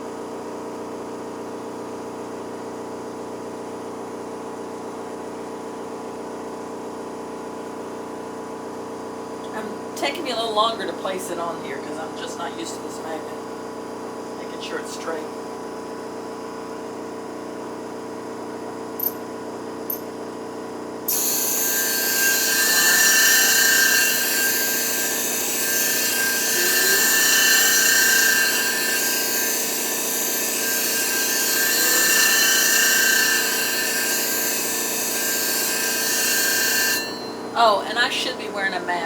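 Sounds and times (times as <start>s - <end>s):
sharpening machine humming: 19.0s - 19.3s, 21.1s - 38.2s
blade grinding on hone plate: 21.1s - 38.3s.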